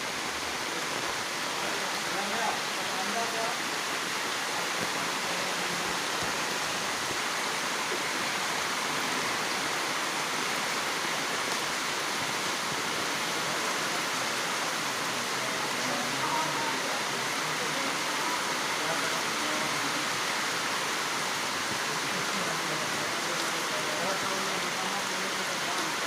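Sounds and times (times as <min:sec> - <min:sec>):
heavy rain falling: 0:00.0 - 0:26.0.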